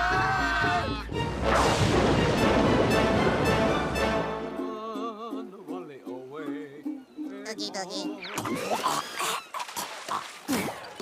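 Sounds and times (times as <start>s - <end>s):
cartoon music: 0.0s - 5.4s, 7.3s - 8.7s
loud noisy sound effect: 1.4s - 4.2s.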